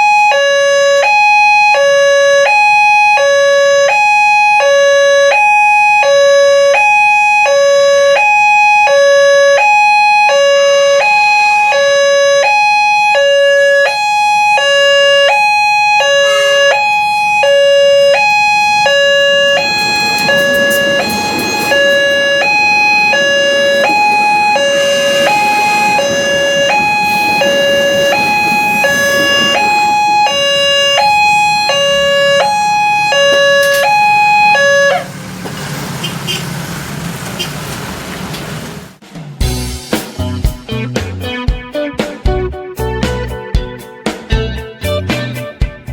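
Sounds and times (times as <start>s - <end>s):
level crossing alarm two tones: 7.5s - 35.1s
train passing rushing noise: 16.0s - 39.8s.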